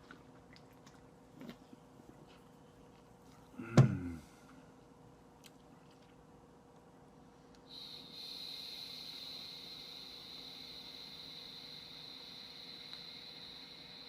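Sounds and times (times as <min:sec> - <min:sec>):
steady hiss: 0:07.6 - 0:14.0.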